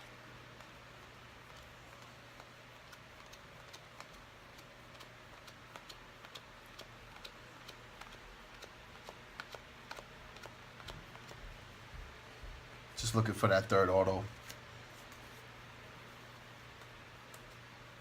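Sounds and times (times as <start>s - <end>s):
trading cards clicking: 1.4s - 11.4s.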